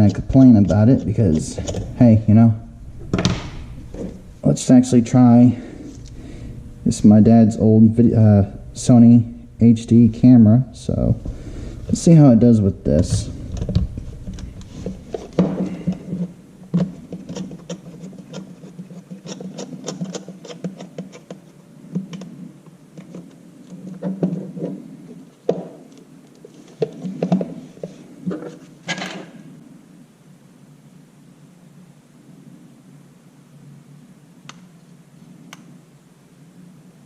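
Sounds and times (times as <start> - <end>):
low hum: 0.0 - 16.7.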